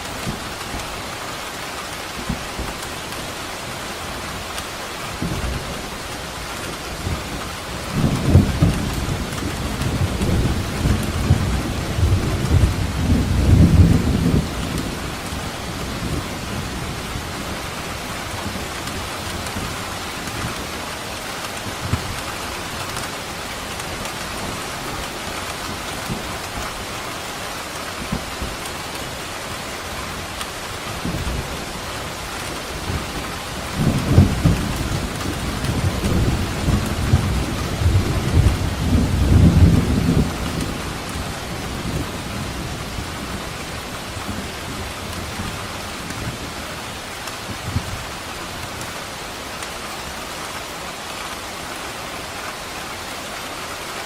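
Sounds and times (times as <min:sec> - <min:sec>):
heavy rain: 0:00.0 - 0:54.0
rolling thunder: 0:07.0 - 0:17.6, 0:30.9 - 0:46.5.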